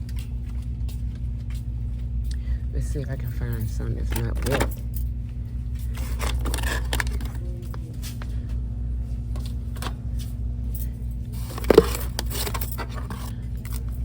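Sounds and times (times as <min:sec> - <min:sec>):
low electrical hum: 0:00.0 - 0:14.0
packaged items rustling and clicking: 0:03.5 - 0:08.4, 0:09.3 - 0:14.0.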